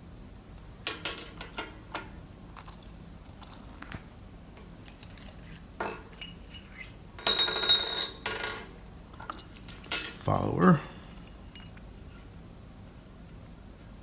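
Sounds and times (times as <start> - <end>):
small metal parts jingling: 7.2 - 8.8.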